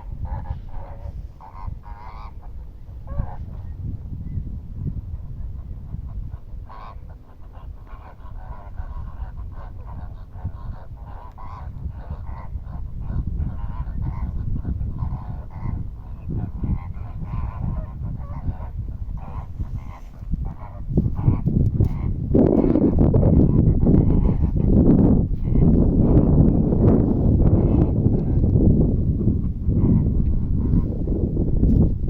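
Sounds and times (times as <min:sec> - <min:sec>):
geese honking: 0:00.0 - 0:03.7, 0:05.5 - 0:24.7.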